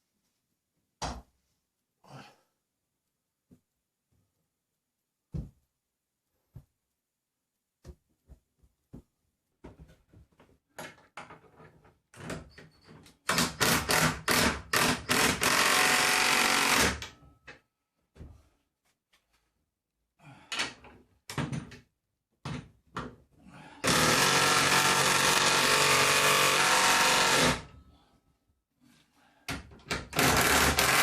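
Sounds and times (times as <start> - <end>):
power drill running: 13.6 - 17.0, 23.8 - 27.7, 30.2 - 31.0.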